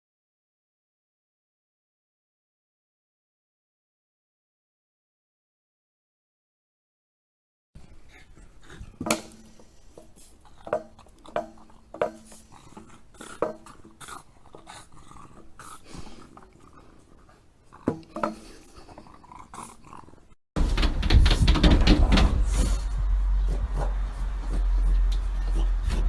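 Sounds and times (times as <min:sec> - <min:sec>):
dog barking and growling: 0:10.4 - 0:20.4.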